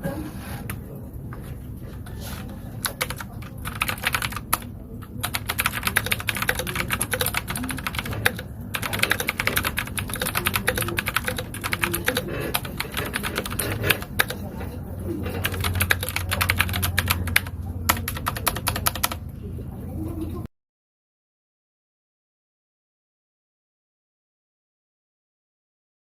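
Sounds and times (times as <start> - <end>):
mechanical keyboard typing: 2.8 - 19.2.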